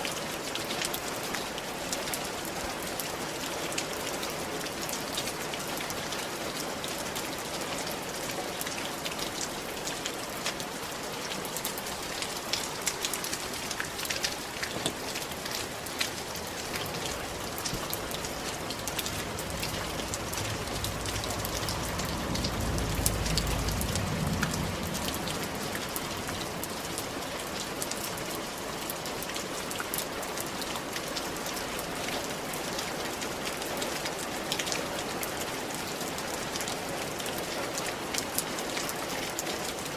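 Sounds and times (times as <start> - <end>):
rain on a tile roof: 0.0 - 39.9
low rumble: 17.3 - 26.8.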